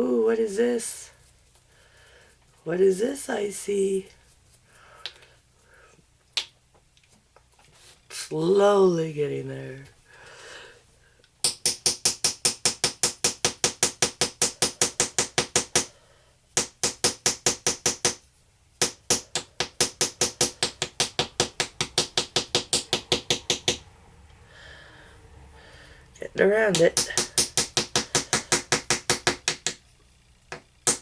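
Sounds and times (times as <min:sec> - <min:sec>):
small hammer tapping rapidly: 0:11.4 - 0:15.9, 0:16.6 - 0:18.2, 0:18.8 - 0:23.9, 0:26.4 - 0:29.9, 0:30.5 - 0:31.0.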